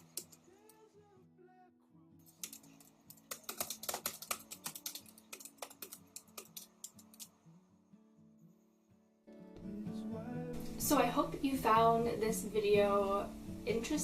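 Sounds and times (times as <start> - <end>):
computer keyboard typing: 2.3 - 7.3.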